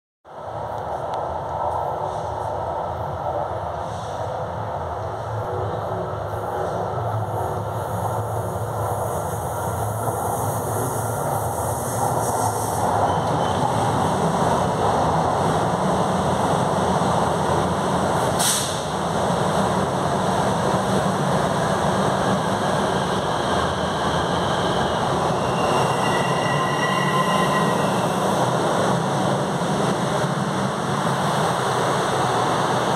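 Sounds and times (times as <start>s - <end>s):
metro train rolling rumble: 0.3s - 32.9s
short hiss: 18.4s - 18.9s.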